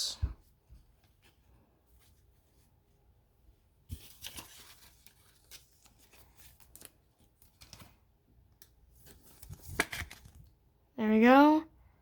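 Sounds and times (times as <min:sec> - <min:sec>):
trading cards rustling and clicking: 0:03.9 - 0:10.5.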